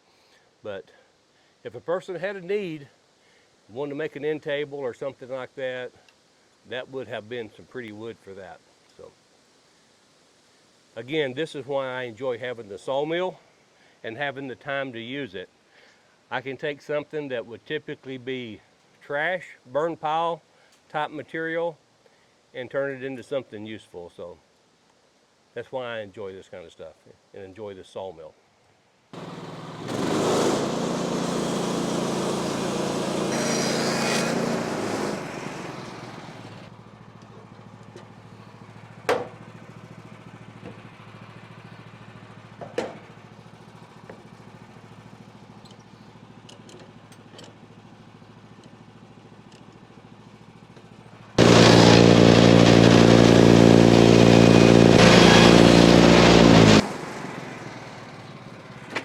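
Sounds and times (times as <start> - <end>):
engine running and idling: 29.2 - 59.0
sharp knocks: 39.1 - 39.4.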